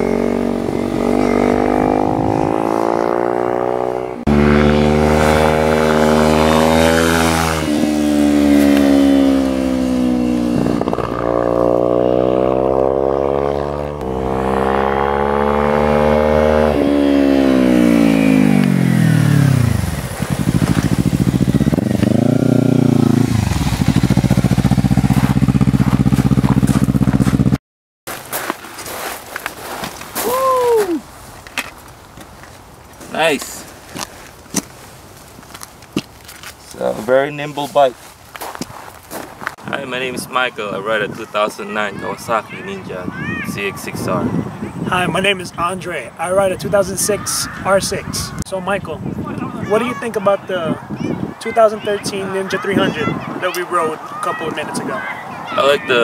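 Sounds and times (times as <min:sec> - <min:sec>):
motorcycle engine accelerating: 0:00.0 - 0:27.6.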